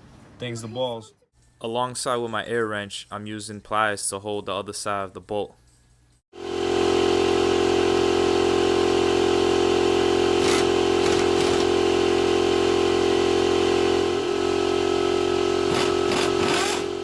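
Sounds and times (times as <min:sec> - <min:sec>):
air compressor droning: 0:06.4 - 0:17.0.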